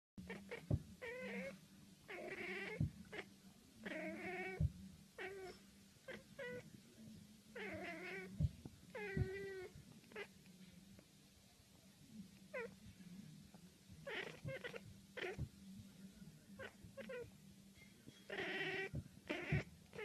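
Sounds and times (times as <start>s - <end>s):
cat meowing: 0.3s - 1.5s, 2.1s - 6.6s, 7.6s - 10.3s, 12.5s - 12.7s, 14.0s - 15.5s, 16.6s - 17.3s, 18.3s - 20.0s.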